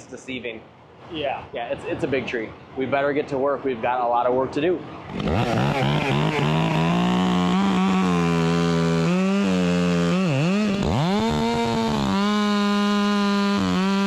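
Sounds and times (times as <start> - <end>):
chainsaw running at high revs: 4.9 - 14.0.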